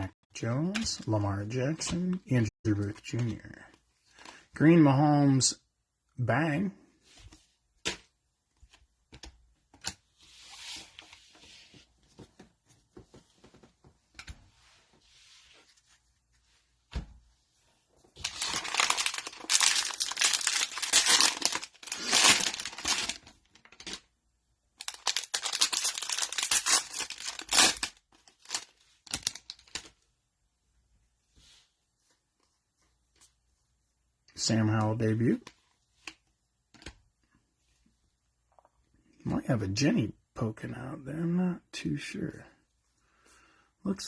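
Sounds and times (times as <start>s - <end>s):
cellophane tearing and crinkling: 18.2s - 24.0s, 24.8s - 29.9s.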